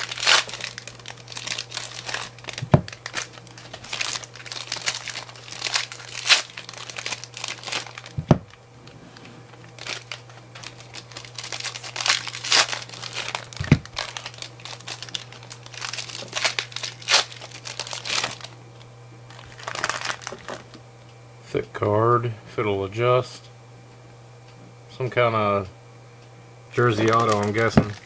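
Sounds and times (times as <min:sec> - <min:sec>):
plastic wrappers torn and crinkled: 0:00.0 - 0:18.6, 0:19.3 - 0:20.8, 0:26.8 - 0:28.0
steady low hum: 0:00.0 - 0:28.0
dull knocks: 0:02.6 - 0:03.0, 0:08.2 - 0:08.5.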